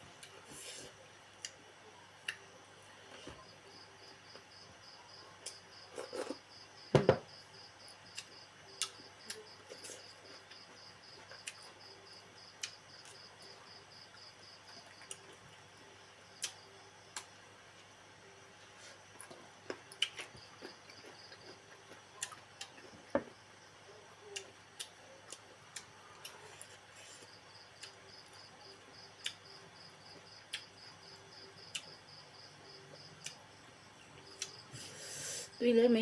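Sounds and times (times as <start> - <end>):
cricket chirping: 1.2 - 36.0
knock: 6.9 - 7.3.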